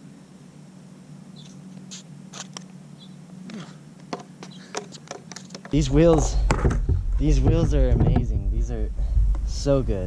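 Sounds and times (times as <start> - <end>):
skateboard wheels rumbling on concrete: 4.1 - 8.8.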